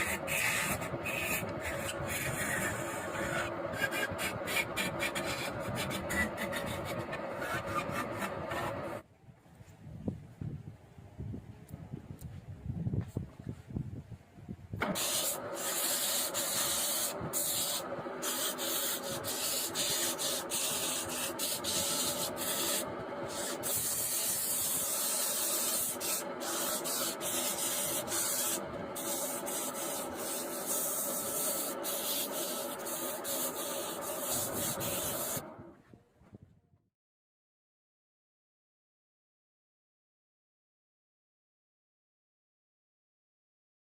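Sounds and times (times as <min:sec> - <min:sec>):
sandpaper hissing on spinning wood: 0:00.0 - 0:09.0, 0:14.8 - 0:35.5
wood lathe humming: 0:00.0 - 0:09.0, 0:14.8 - 0:35.6.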